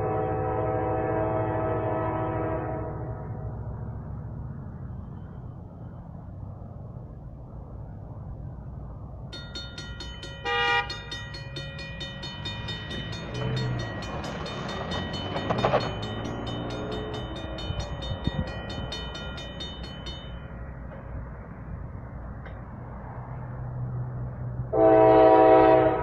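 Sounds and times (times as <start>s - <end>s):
air horn blast: 0.0s - 3.4s, 10.4s - 11.0s, 24.7s - 26.0s
diesel locomotive engines rumbling: 0.0s - 26.0s
high pulsing ringing: 9.3s - 21.3s.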